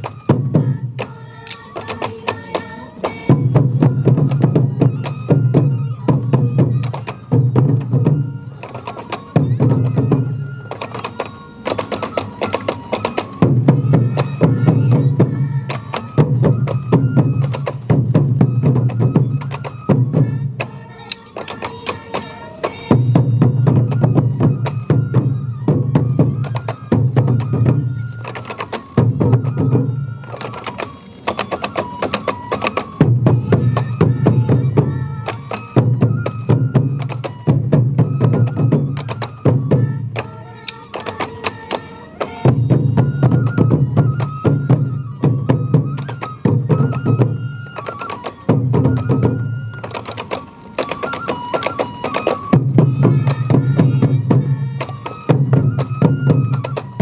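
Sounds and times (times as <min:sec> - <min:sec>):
high bamboo flute melody: 0:00.0 - 0:57.0
rapid taiko drumbeats: 0:00.0 - 0:57.0.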